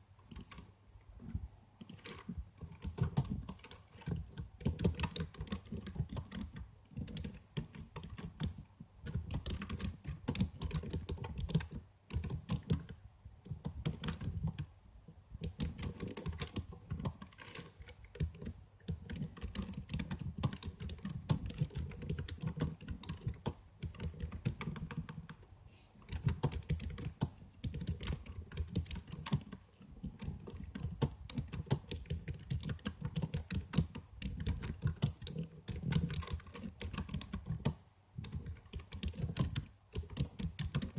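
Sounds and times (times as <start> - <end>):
computer keyboard typing: 0.3 - 0.7, 1.8 - 14.7, 15.4 - 25.4, 26.0 - 40.9.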